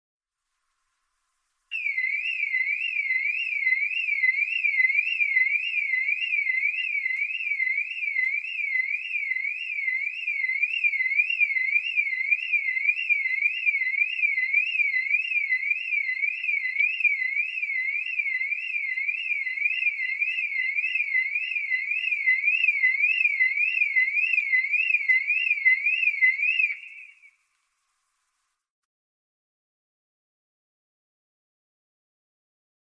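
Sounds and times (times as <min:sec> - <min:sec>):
car alarm siren wailing: 0:01.7 - 0:27.3.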